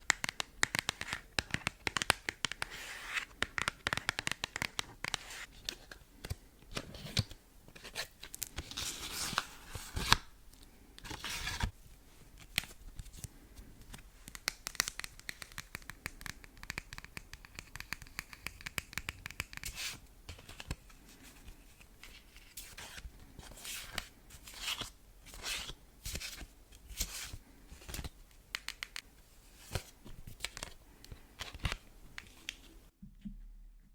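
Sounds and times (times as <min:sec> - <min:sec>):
fingernails tapping on cards: 0:00.0 - 0:02.7, 0:03.3 - 0:05.2.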